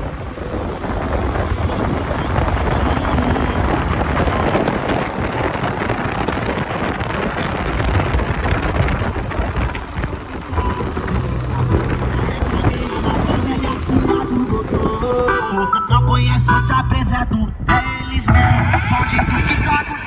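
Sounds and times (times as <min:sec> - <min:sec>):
deep low rumble: 0:00.0 - 0:15.3
loud wind buffeting microphone: 0:00.0 - 0:20.0.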